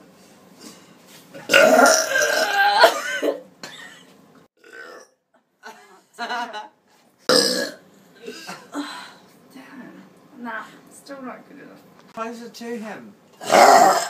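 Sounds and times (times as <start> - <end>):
woman burping loudly: 1.4 - 3.4, 4.6 - 5.2, 7.3 - 8.7, 13.4 - 14.0.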